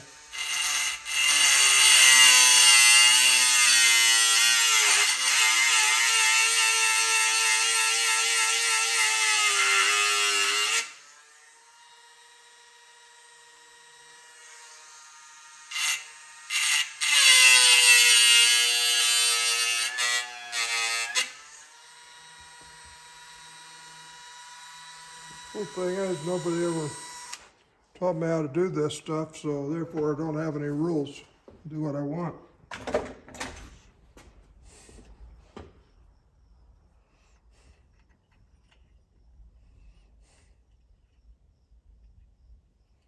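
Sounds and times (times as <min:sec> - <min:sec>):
electric rotary tool whining: 0:00.0 - 0:27.5.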